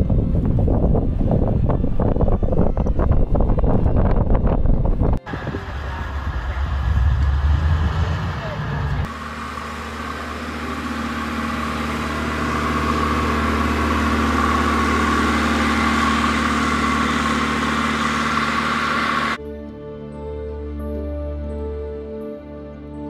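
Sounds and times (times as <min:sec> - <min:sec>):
vehicle engine running: 0:00.0 - 0:19.4
rushing noise: 0:05.2 - 0:19.4
soft music: 0:19.4 - 0:23.0.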